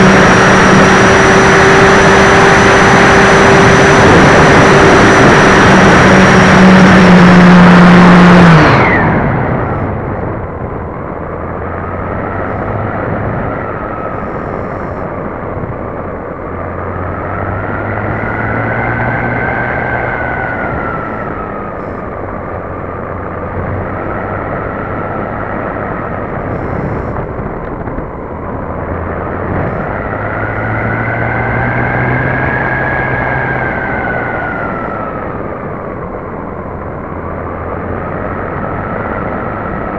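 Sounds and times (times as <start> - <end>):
wind rushing past microphone: 8.4 - 39.9.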